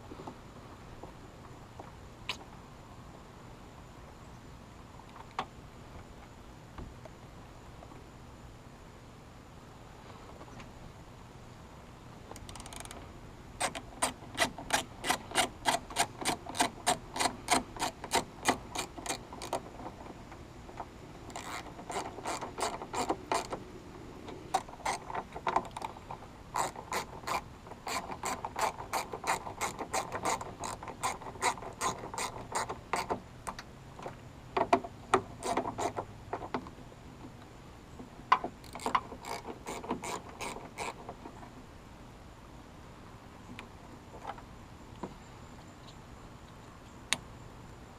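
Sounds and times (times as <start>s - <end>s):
ratchet clicking: 12.4s - 13.0s, 13.6s - 19.6s, 21.3s - 23.6s, 38.6s - 41.0s.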